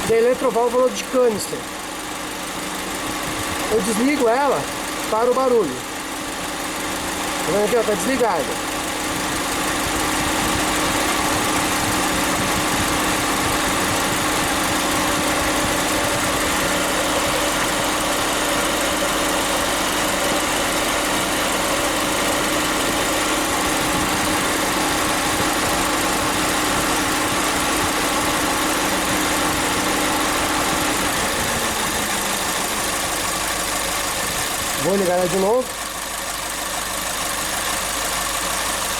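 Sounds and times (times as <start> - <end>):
car engine idling: 0.0 - 38.9
radiator fan whooshing hum: 6.4 - 35.6.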